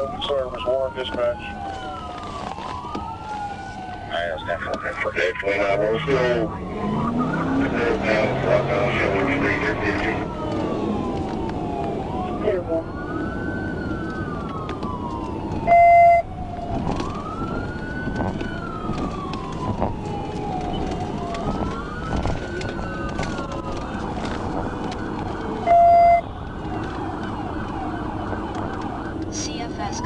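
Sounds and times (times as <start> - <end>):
police siren wailing: 0.0 - 30.0
road noise: 0.0 - 30.0
loud electronic beep: 15.7 - 16.2, 25.7 - 26.2.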